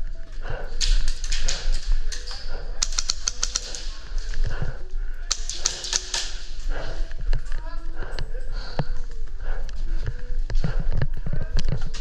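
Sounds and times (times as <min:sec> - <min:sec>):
airsoft guns firing: 0:01.1 - 0:04.2, 0:05.3 - 0:06.7.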